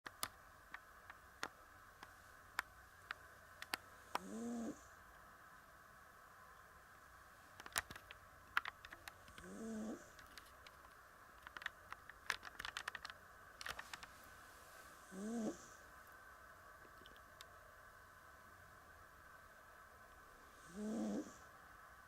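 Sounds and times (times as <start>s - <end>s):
faint steady hum: 0.0s - 22.0s
sharp clicks: 0.1s - 4.3s, 7.6s - 14.1s
cat snoring: 4.1s - 5.0s, 9.4s - 10.2s, 15.0s - 15.8s, 20.5s - 21.5s.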